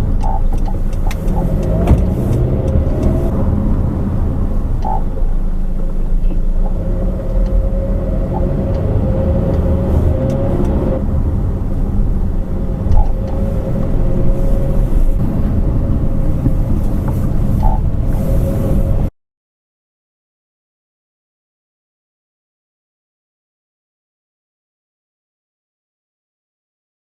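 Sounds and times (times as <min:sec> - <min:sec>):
car engine rumble: 0:00.0 - 0:19.1
road noise: 0:00.0 - 0:19.1.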